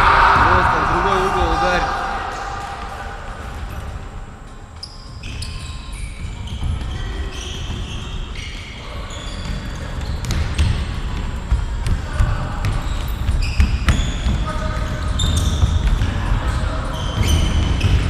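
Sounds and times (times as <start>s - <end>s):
shoes squeaking on floor: 4.6s - 18.0s.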